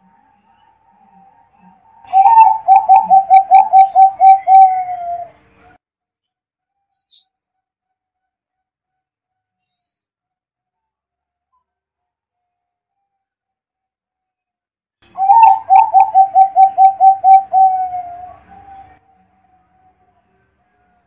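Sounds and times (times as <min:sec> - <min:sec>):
dove cooing: 0:02.1 - 0:05.4, 0:15.2 - 0:19.0.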